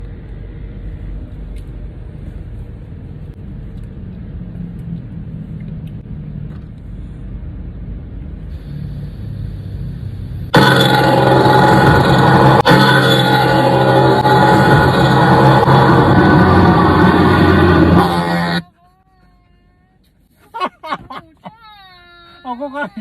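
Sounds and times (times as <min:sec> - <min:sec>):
low vehicle rumble: 0:00.0 - 0:18.7
truck horn blasting: 0:10.5 - 0:18.8.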